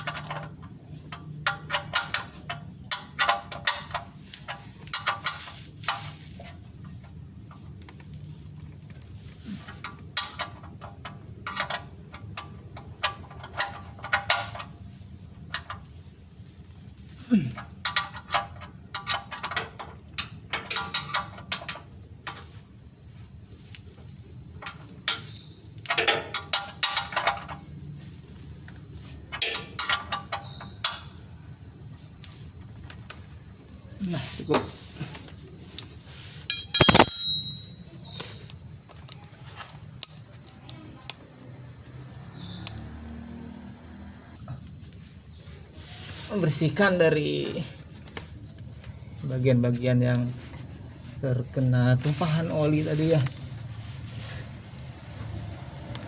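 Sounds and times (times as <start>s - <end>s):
tools and metal parts clattering: 24.6s - 27.7s, 36.5s - 38.2s.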